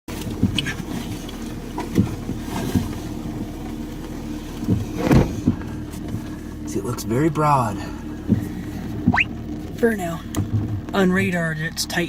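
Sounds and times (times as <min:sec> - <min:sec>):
vehicle engine hum: 0:00.0 - 0:12.0
short knocks: 0:04.7 - 0:05.8.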